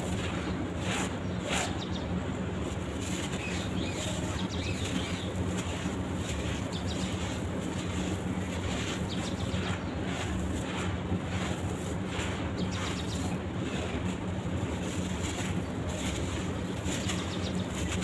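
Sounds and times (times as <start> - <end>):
low steady hum: 0.0 - 18.0.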